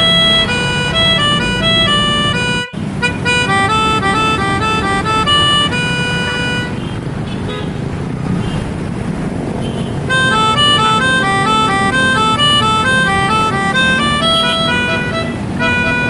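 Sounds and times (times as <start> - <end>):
multi-tone air horn melody: 0.0 - 6.8, 10.1 - 16.0.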